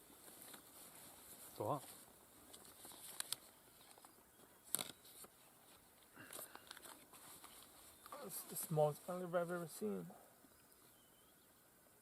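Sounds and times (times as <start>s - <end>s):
light rustling: 0.2s - 9.9s.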